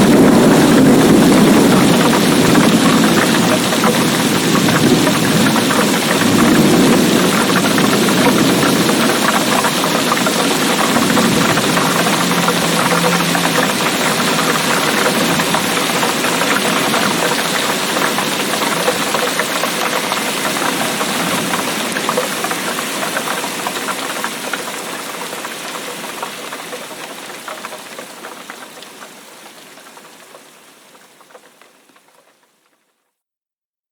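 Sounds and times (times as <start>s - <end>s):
heavy rain pouring: 0.0s - 32.6s.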